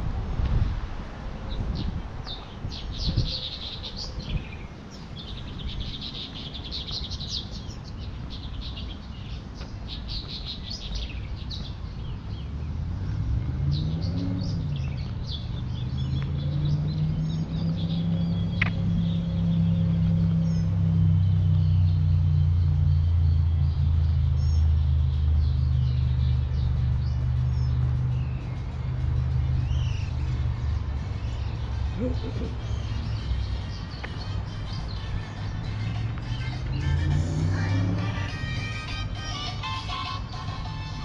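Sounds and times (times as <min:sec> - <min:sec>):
birds chirping: 0:01.4 - 0:41.0
vehicle engine running: 0:12.4 - 0:41.0.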